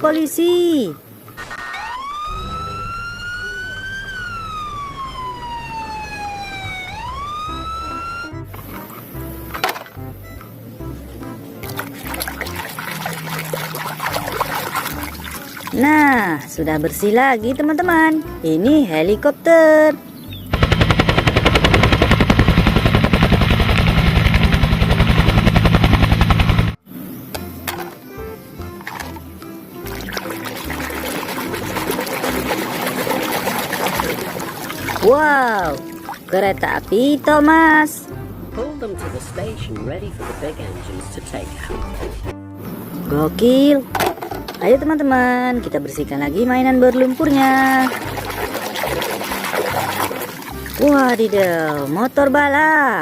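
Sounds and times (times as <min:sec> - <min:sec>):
police siren wailing: 0:01.4 - 0:08.6.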